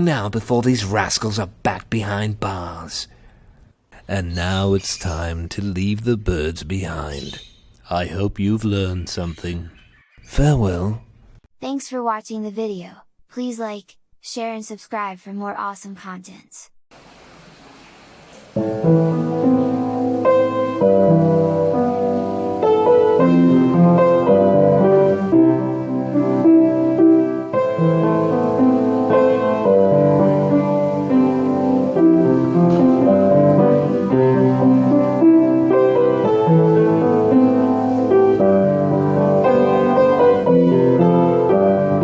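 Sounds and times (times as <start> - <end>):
soft classical piano music: 18.6 - 42.0.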